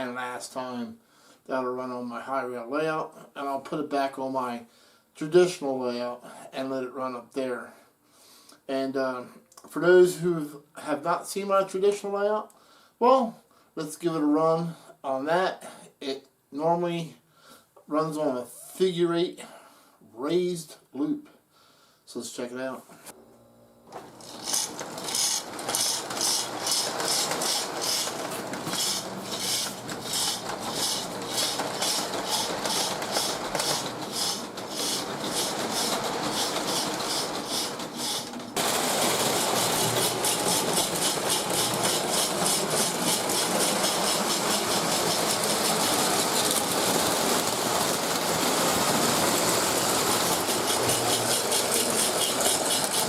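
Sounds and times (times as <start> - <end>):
electric motor whirring: 24.1 - 53.0
toy steam locomotive chuffing: 24.2 - 53.0
wheels rattling on track: 24.3 - 53.0.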